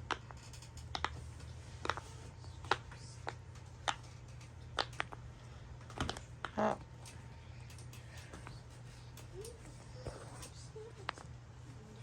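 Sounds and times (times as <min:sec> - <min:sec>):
low steady hum: 0:00.0 - 0:12.0.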